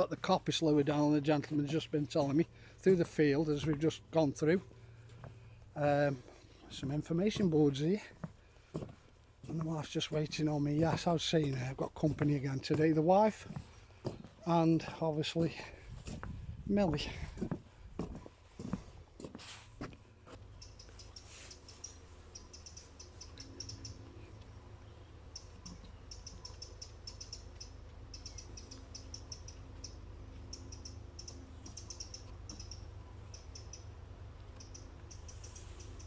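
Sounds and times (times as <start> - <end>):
high-pitched ticking animal calls: 20.4 - 36.0.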